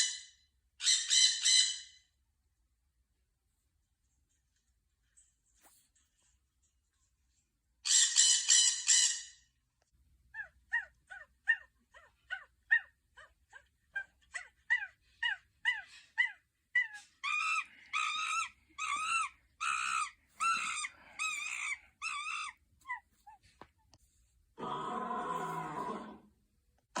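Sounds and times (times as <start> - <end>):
longer arched animal calls: 17.2 - 23.0, 24.6 - 26.2.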